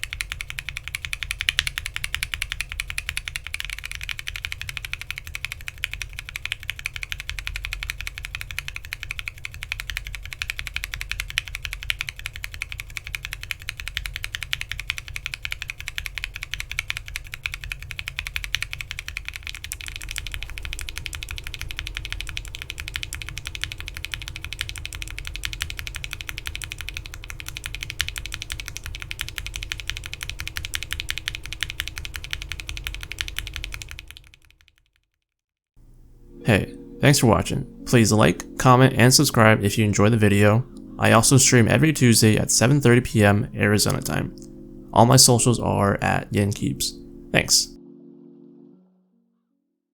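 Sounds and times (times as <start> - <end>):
fast typing on mechanical keyboard: 0.0 - 34.9.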